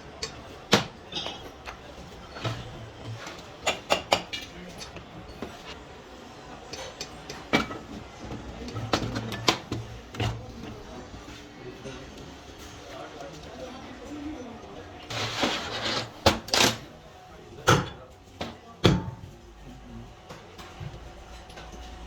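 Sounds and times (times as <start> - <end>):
metal tools clinking and knocking: 1.1 - 2.6.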